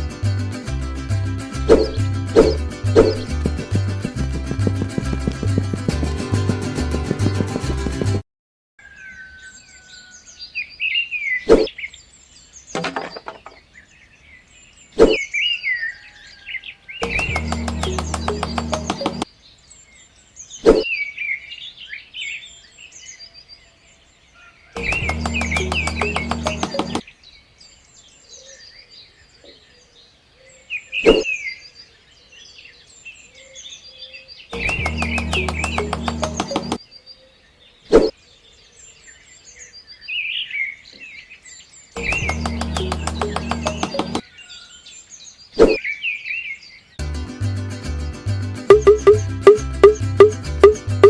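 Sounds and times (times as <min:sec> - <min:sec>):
birds chirping: 0:01.7 - 0:08.2, 0:08.8 - 0:47.0
sharp knocks: 0:12.8 - 0:13.6, 0:24.8 - 0:27.0, 0:34.6 - 0:36.8, 0:42.0 - 0:44.2
clicks: 0:17.0 - 0:19.2, 0:24.8 - 0:27.0, 0:34.6 - 0:36.8, 0:42.0 - 0:44.2.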